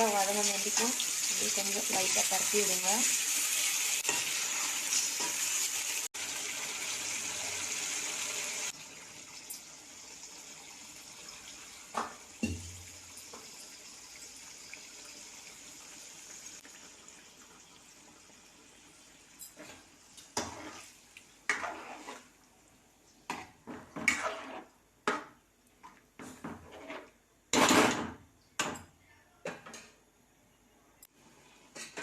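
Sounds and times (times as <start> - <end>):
meat sizzling in hot oil: 0.0 - 19.1.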